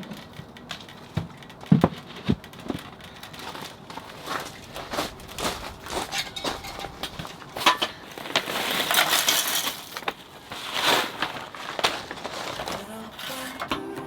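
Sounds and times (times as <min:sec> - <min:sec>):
small hard objects clinking: 0:03.1 - 0:13.6.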